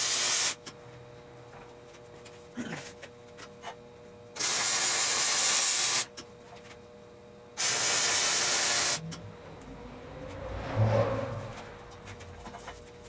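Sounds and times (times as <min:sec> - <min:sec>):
welding arc sizzling: 0:00.0 - 0:00.7, 0:04.4 - 0:06.2, 0:07.6 - 0:09.2.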